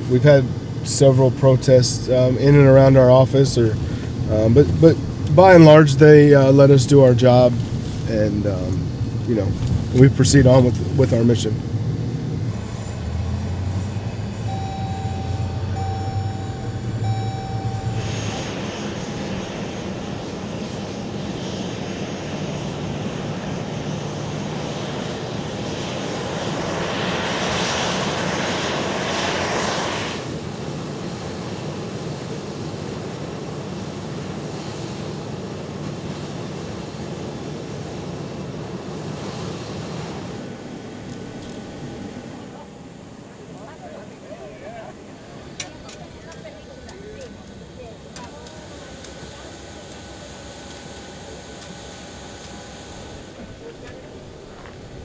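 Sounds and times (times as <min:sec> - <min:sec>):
aircraft engines running: 0:00.0 - 0:55.0
short beeps: 0:12.6 - 0:18.5.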